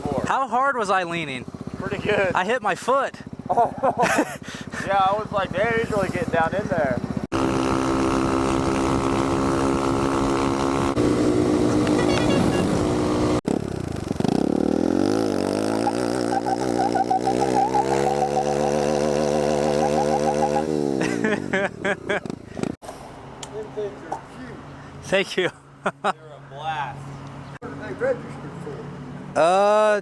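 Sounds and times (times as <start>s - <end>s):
motorcycle engine running: 1.1s - 22.8s.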